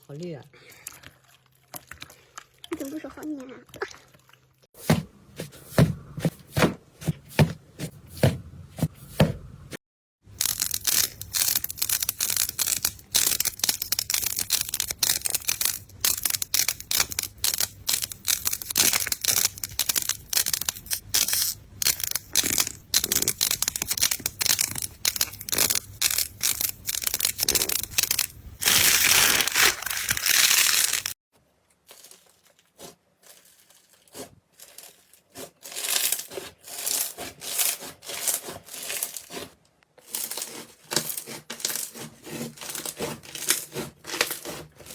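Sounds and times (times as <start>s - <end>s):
slime crackling and popping: 10.3s - 31.2s.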